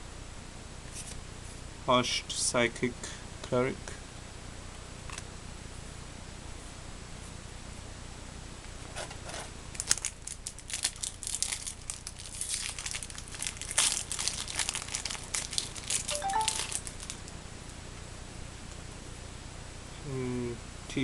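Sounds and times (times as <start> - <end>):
foil wrapper crinkling: 9.8 - 17.2.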